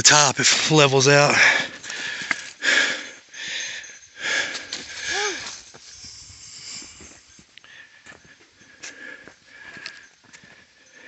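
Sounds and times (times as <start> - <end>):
person breathing hard: 1.4 - 11.0
person groaning: 5.1 - 5.5.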